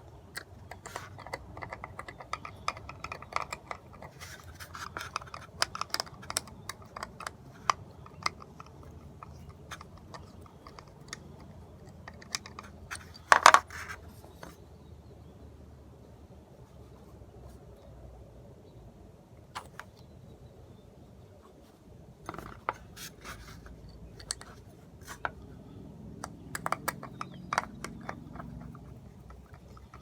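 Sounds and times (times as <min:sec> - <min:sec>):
screws and hand tool clicking: 0:00.3 - 0:14.0, 0:26.2 - 0:30.0.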